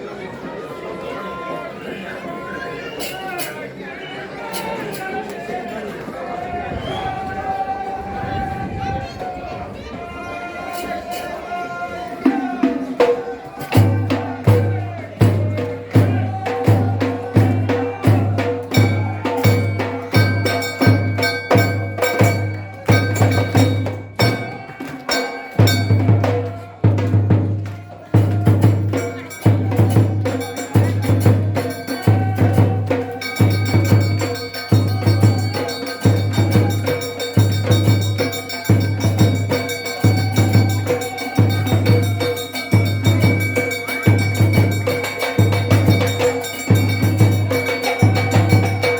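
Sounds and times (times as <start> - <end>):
frame drums beating: 12.2 - 48.9
percussive strikes: 12.6 - 48.9.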